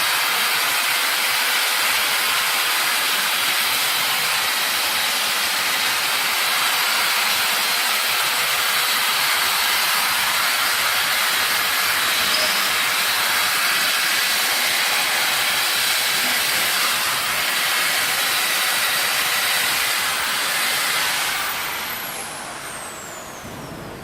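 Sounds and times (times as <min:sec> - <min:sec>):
compressed air hissing: 0:02.5 - 0:23.8
high whine falling in pitch: 0:11.6 - 0:13.9, 0:21.5 - 0:24.0.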